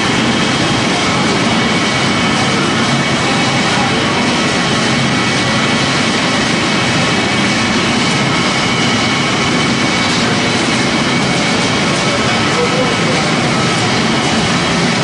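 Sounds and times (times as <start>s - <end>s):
pellet mill running: 0.0s - 15.0s.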